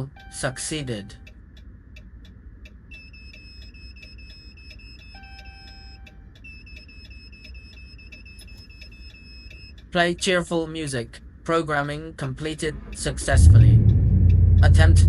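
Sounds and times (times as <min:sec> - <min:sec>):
rapid high-pitched electronic beeps: 0:02.9 - 0:09.8
faint low hum: 0:08.5 - 0:15.0.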